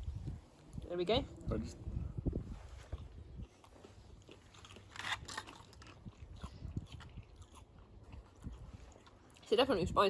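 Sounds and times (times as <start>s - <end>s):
chewing and crunching peanuts: 2.8s - 10.0s.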